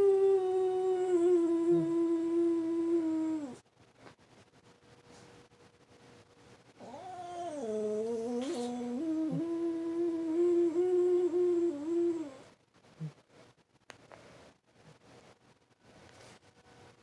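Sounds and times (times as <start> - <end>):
dog howling: 0.0 - 3.6, 6.8 - 12.4.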